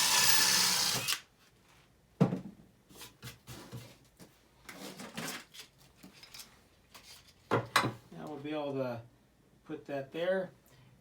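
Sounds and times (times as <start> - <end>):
power drill boring into wood: 0.0 - 1.2
tools and wood clattering: 4.7 - 8.0.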